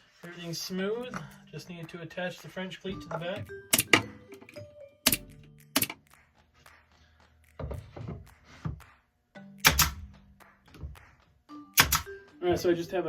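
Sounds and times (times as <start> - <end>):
faint background music: 0.0 - 13.0
wooden knocks and thunks: 7.6 - 8.8.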